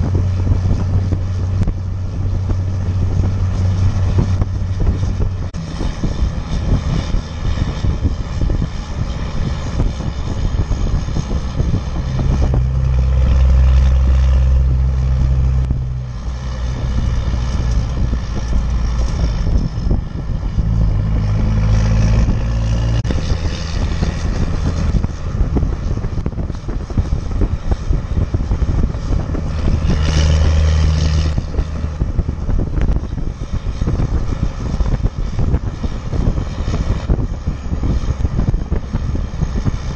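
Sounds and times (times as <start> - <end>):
diesel truck engine drone: 0.0 - 39.9.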